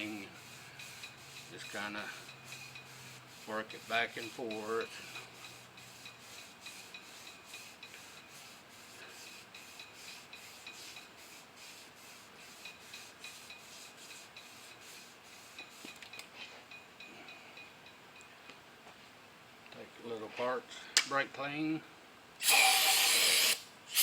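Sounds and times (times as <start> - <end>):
rhythmic rubbing on metal: 0.0 - 16.1.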